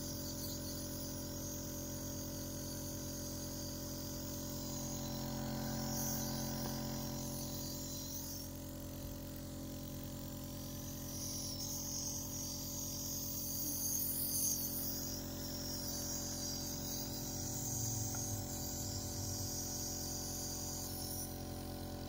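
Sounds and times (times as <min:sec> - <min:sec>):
nebulizer compressor humming: 0:00.0 - 0:22.0.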